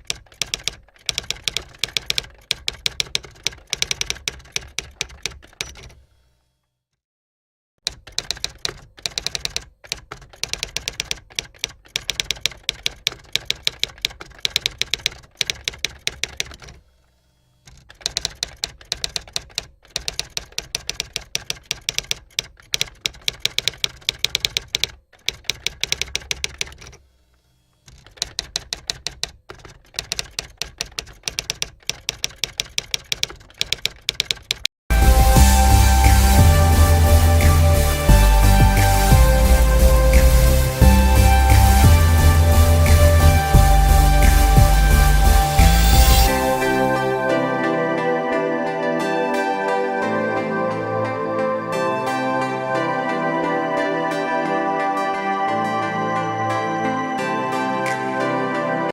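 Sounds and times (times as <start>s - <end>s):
rapid typing clicks: 0.0s - 6.0s, 7.8s - 16.8s, 17.7s - 27.0s, 27.9s - 34.7s.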